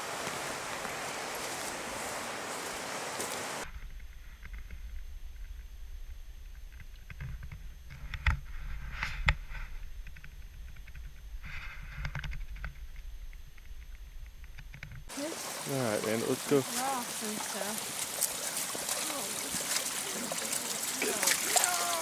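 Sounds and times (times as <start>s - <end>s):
steady rushing hiss: 0.0s - 3.7s, 15.1s - 22.0s.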